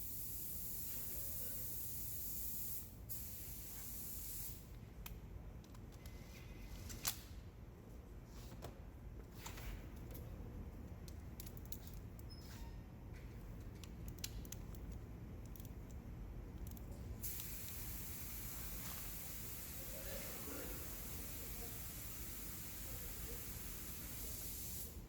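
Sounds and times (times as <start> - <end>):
spray hissing: 17.2 - 25.0.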